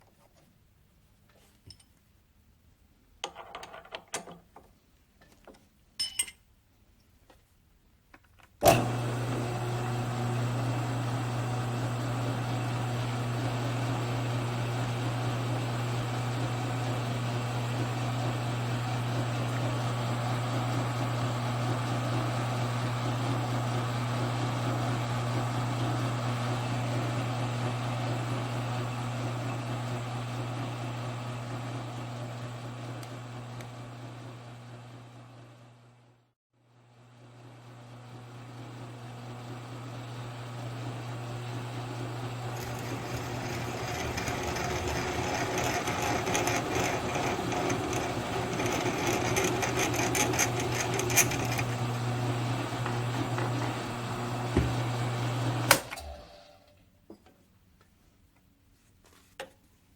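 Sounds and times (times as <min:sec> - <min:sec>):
electric motor humming: 0:42.1 - 0:56.2.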